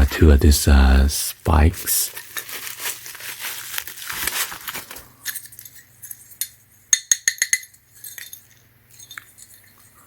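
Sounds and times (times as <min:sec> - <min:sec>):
packaging crinkling: 0:02.0 - 0:05.3
metal spikes clinking together: 0:05.2 - 0:09.8.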